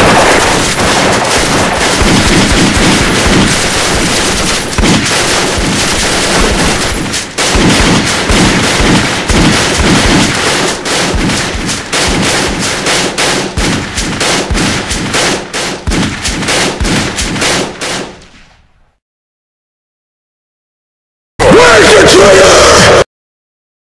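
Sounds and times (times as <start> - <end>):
machine-gun bursts: 0.0 - 18.2
guns firing: 0.0 - 18.7.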